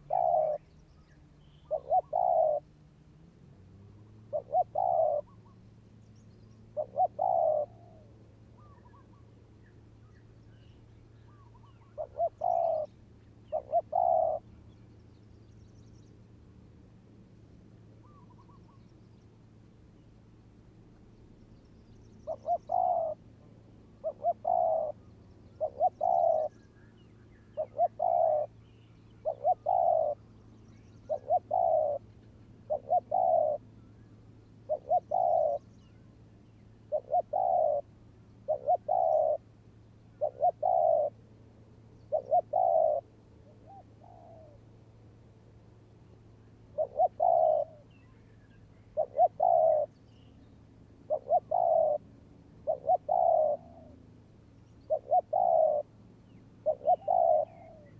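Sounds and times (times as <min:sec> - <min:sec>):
doves cooing: 0:00.0 - 0:00.7, 0:01.4 - 0:02.8, 0:03.6 - 0:05.7, 0:06.7 - 0:09.4, 0:11.3 - 0:14.6, 0:22.2 - 0:26.6, 0:27.5 - 0:28.6, 0:29.2 - 0:30.3, 0:31.0 - 0:36.1, 0:36.8 - 0:41.2, 0:42.1 - 0:44.7, 0:46.6 - 0:49.9, 0:51.0 - 0:54.1, 0:54.8 - 0:56.0, 0:56.6 - 0:57.9.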